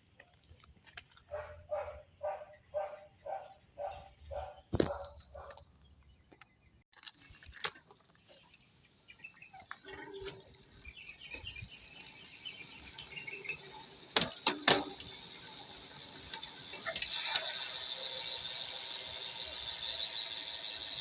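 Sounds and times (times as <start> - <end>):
bicycle freehub ratcheting: 11.8 - 21.0.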